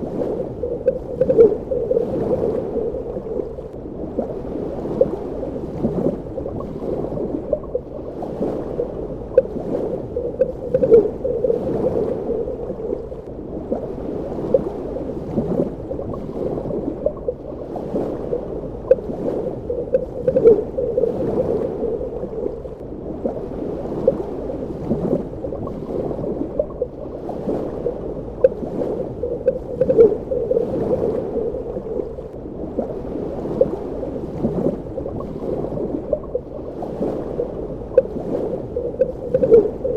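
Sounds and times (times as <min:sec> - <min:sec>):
underwater rush of water: 0:00.0 - 0:39.9
bubbling pops: 0:38.8 - 0:39.9.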